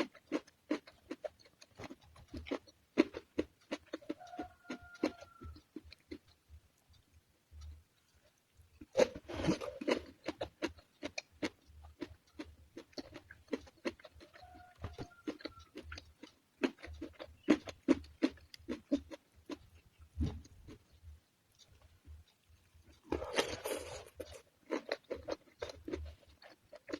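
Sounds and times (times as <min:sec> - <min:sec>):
chewing crunchy food: 0:00.0 - 0:26.9
mouth clicks: 0:22.9 - 0:26.1.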